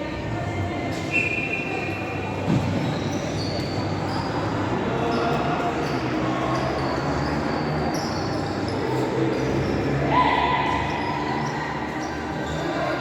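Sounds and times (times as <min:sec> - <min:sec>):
shoes squeaking: 0:01.1 - 0:09.9.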